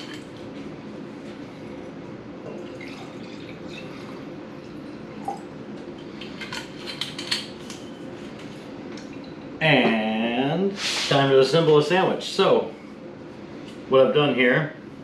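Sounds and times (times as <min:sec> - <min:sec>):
low background hum: 0:00.0 - 0:15.0
dishes and utensils clicking: 0:06.2 - 0:07.8.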